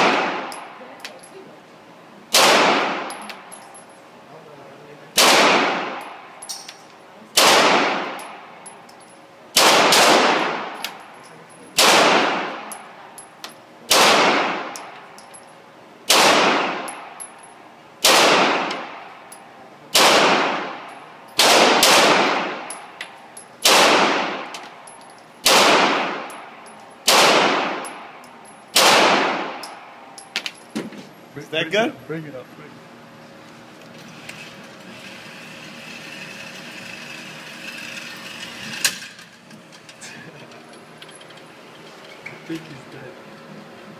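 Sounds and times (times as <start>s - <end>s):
pistol shots echoing: 2.3s - 3.2s, 5.2s - 6.2s, 7.4s - 8.4s, 9.6s - 10.8s, 11.8s - 12.7s, 13.9s - 14.9s, 16.1s - 17.2s, 18.0s - 19.1s, 19.9s - 22.8s, 23.6s - 24.5s, 25.4s - 29.8s.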